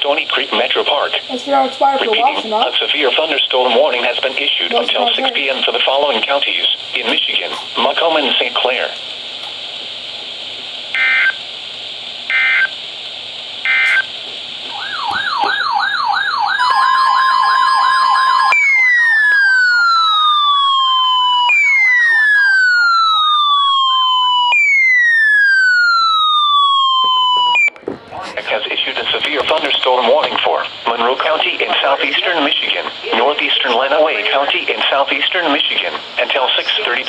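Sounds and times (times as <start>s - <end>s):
radio hiss: 0.0s - 14.7s, 27.7s - 37.0s
electronic siren warbling: 11.0s - 11.4s, 13.7s - 14.1s, 14.7s - 27.8s.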